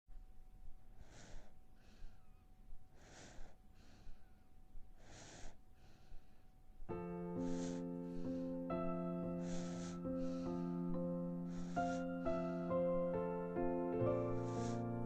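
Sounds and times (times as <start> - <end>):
baby monkey snoring: 0.9 - 6.3, 9.4 - 10.4.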